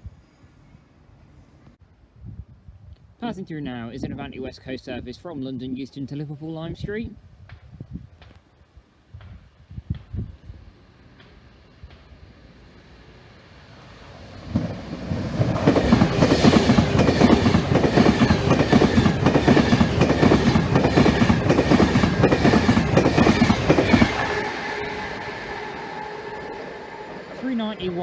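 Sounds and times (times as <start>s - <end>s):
electric train passing: 9.9s - 28.0s
train wheels clattering on rails: 14.4s - 24.8s.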